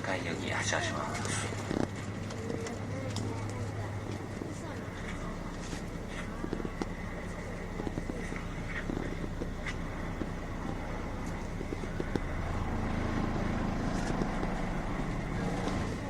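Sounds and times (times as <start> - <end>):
bus diesel engine revving: 0.0 - 16.0.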